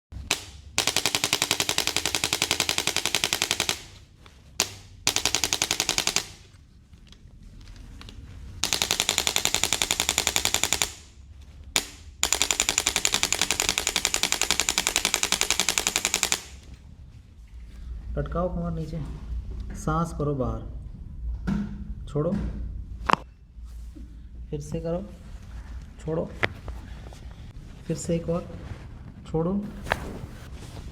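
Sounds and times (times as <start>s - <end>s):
rapid mechanical clicking: 0.1s - 6.6s, 8.6s - 11.1s, 11.8s - 16.7s.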